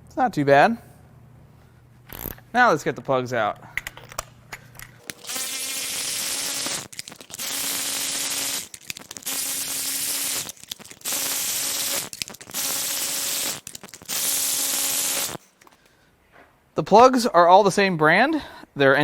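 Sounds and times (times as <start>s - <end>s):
air ratchet whining: 5.0s - 15.8s.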